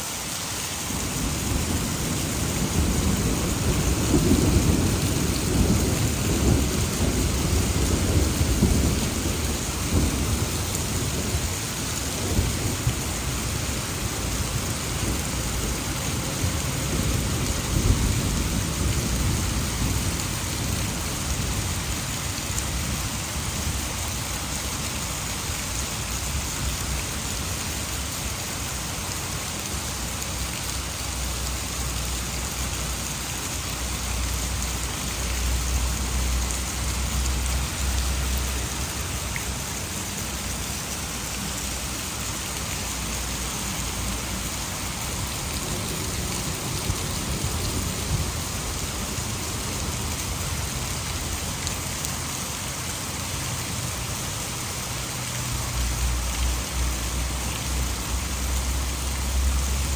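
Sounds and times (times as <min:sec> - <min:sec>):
heavy rain pouring: 0:00.0 - 0:59.9
thunder rumbling: 0:00.9 - 0:23.9, 0:43.7 - 0:51.4.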